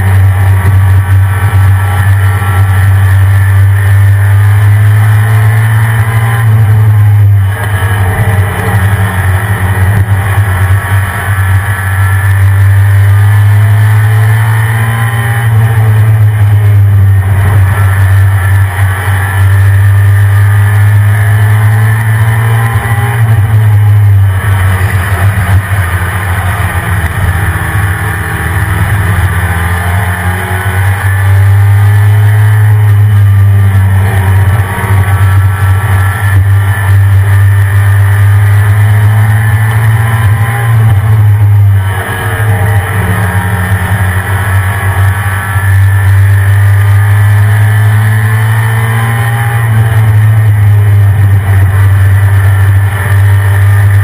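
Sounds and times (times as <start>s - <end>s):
truck engine droning: 0.0s - 54.0s.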